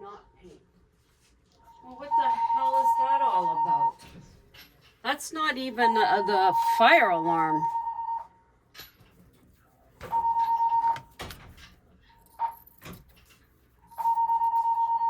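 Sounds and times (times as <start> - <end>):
alarm panel beeping: 2.0 - 4.1, 5.4 - 8.3, 10.0 - 11.3, 13.9 - 15.0.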